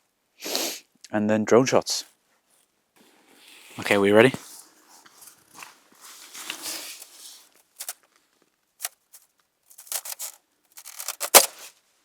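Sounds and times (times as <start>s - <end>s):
thin ice crunching underfoot: 3.3s - 8.1s, 8.8s - 11.7s.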